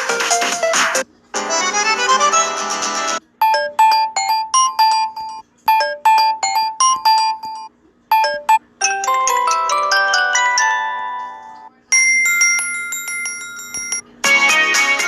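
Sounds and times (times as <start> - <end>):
rising ringtone notes: 3.4 - 14.0
bell-like ringtone notes: 3.4 - 14.1.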